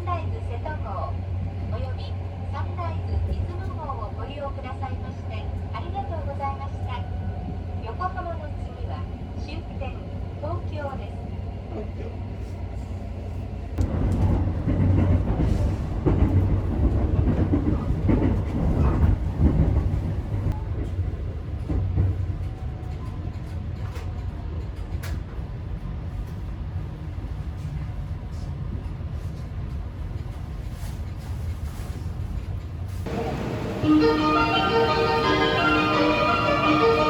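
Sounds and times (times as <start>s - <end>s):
train wheels rumbling: 12.2s - 37.0s.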